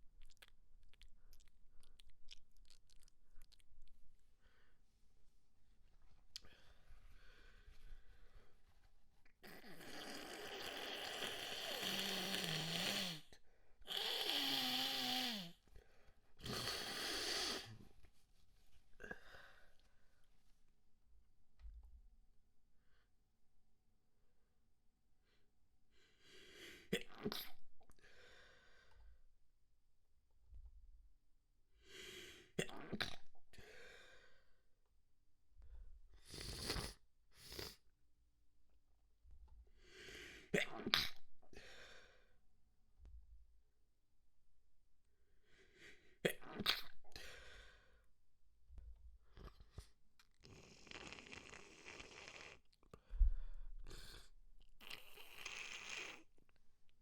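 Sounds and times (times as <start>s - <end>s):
person blowing nose: 10.1s - 13.3s, 13.9s - 15.5s, 16.4s - 17.7s, 36.3s - 37.8s, 50.9s - 52.6s, 55.1s - 56.2s
sniffs: 16.4s - 17.9s, 36.2s - 37.8s, 49.4s - 56.3s.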